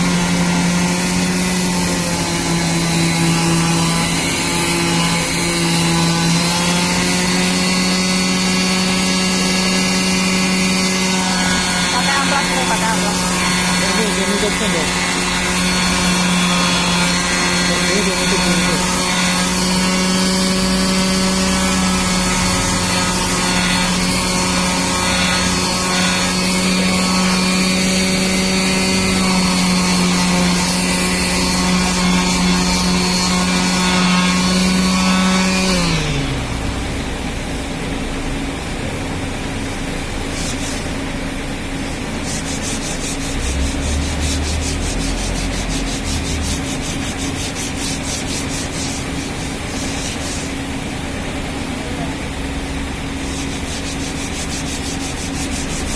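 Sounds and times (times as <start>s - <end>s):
rubbing and scraping on wood: 0.0s - 22.0s, 40.3s - 41.0s, 41.9s - 50.8s, 53.2s - 55.9s
power tool motor on wood: 0.0s - 36.6s, 42.0s - 50.8s.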